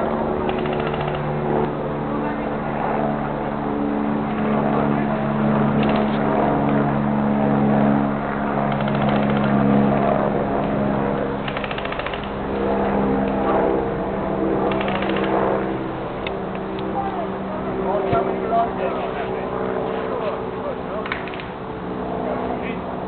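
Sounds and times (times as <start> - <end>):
airsoft rifle firing: 0.5 - 1.2, 8.7 - 9.5, 11.5 - 12.3, 14.7 - 15.3.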